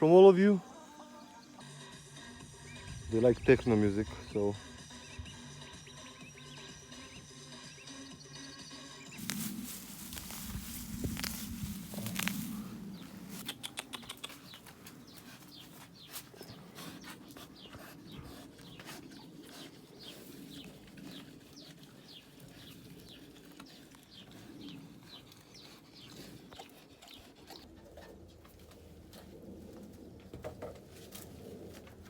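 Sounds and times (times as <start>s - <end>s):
low bird calls: 4.1s - 18.9s.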